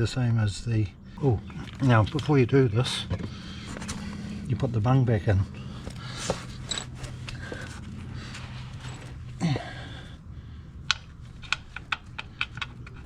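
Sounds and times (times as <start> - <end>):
man grunting: 9.4 - 10.0.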